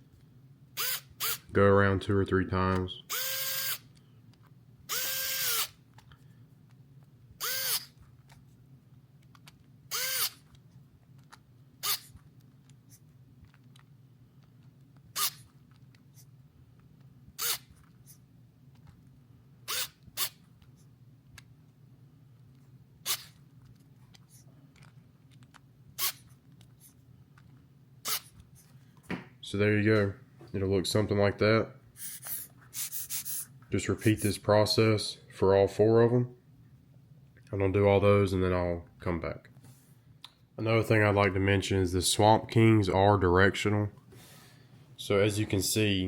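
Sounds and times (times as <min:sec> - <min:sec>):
electric screwdriver whirring: 0:00.8 - 0:01.5, 0:03.1 - 0:03.9, 0:04.9 - 0:05.8, 0:07.4 - 0:08.0, 0:09.9 - 0:10.4, 0:11.8 - 0:12.1, 0:15.2 - 0:15.4, 0:17.4 - 0:17.7, 0:19.7 - 0:20.4.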